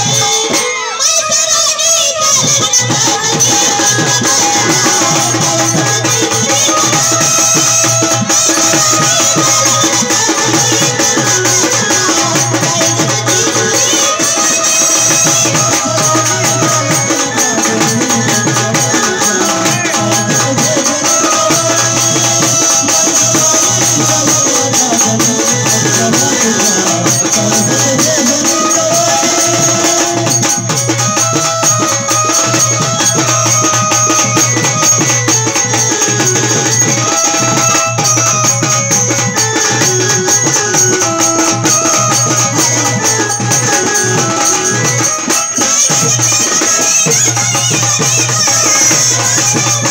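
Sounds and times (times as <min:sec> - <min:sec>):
woman singing: 0:00.0 - 0:31.3
jingling tambourine-like percussion: 0:00.0 - 0:49.9
rapid drum beats: 0:00.0 - 0:49.9.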